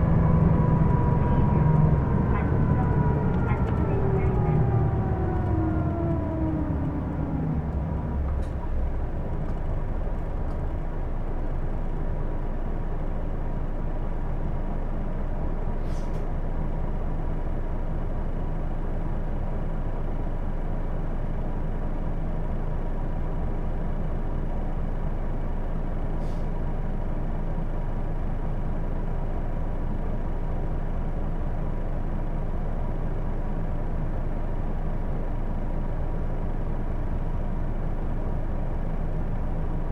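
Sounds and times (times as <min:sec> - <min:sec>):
whining tones falling in pitch: 0:00.0 - 0:08.8
bus engine running: 0:00.0 - 0:39.9.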